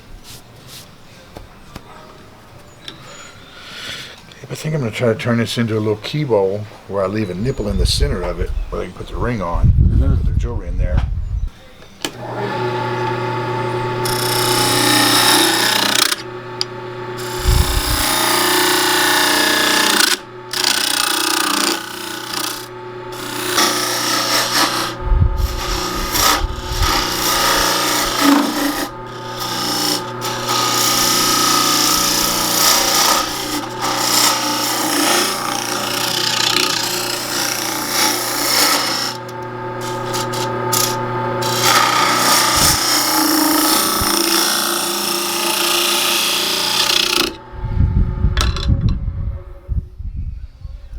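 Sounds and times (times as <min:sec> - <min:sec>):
lathe motor hum: 0:12.1 - 0:47.5
lathe tool scraping wood: 0:12.2 - 0:47.4.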